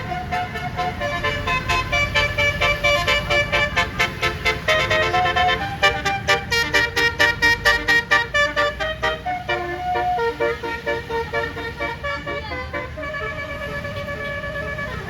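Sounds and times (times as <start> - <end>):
low engine rumble: 0.0 - 15.0
multi-tone air horn melody: 0.0 - 15.0.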